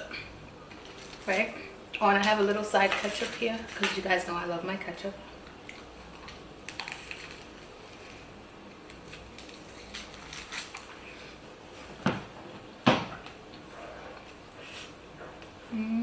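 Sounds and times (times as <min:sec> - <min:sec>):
sandwich crunching: 0:05.6 - 0:11.4.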